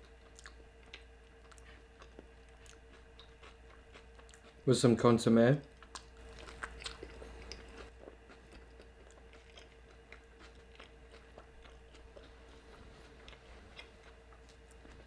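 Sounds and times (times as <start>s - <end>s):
close-up chewing: 0.0s - 4.6s, 5.6s - 15.0s
low steady hum: 0.0s - 15.0s.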